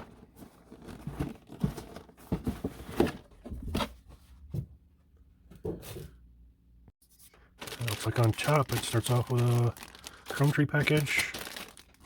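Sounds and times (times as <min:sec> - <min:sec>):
plastic bags rustling: 0:07.4 - 0:12.0.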